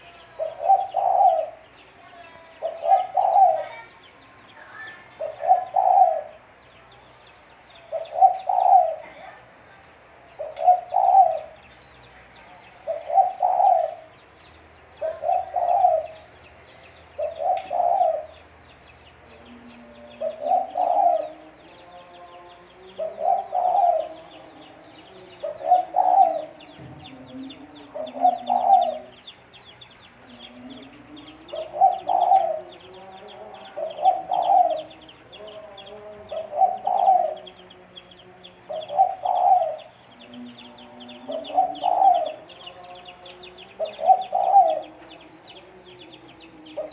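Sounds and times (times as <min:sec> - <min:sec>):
dove cooing: 0:00.0 - 0:03.9, 0:04.8 - 0:06.5, 0:07.7 - 0:09.3, 0:10.4 - 0:11.6, 0:12.8 - 0:14.2, 0:15.0 - 0:16.3, 0:17.2 - 0:18.5, 0:19.3 - 0:21.6, 0:22.9 - 0:29.4, 0:30.3 - 0:37.7, 0:38.5 - 0:43.0, 0:43.6 - 0:45.2, 0:46.1 - 0:46.9.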